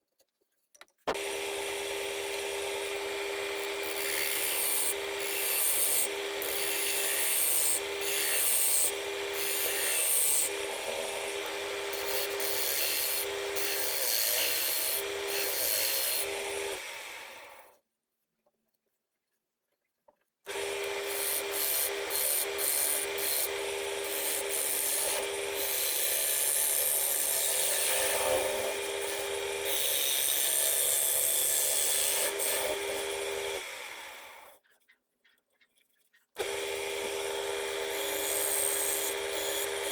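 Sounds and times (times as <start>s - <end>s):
tool scraping spinning wood: 1.1s - 16.9s, 36.4s - 39.9s
wood lathe humming: 1.1s - 17.6s, 20.5s - 34.5s, 36.4s - 39.9s.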